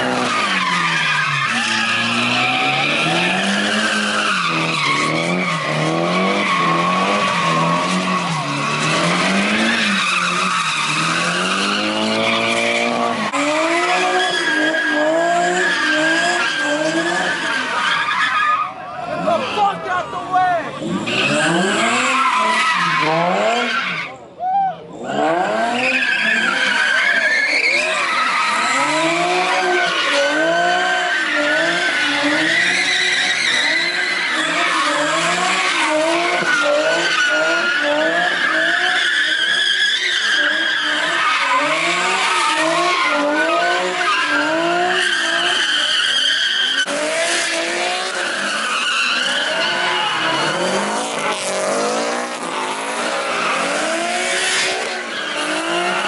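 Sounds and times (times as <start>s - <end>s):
car engine revving: 0.0s - 17.8s, 20.4s - 24.0s, 25.0s - 56.0s
tyres squealing: 25.8s - 56.0s.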